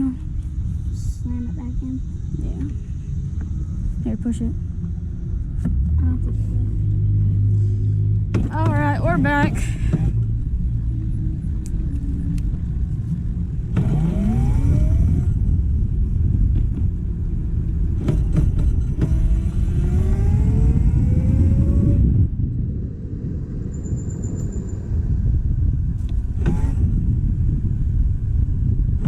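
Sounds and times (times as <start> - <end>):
scooter engine accelerating: 13.4 - 17.2, 17.8 - 23.6.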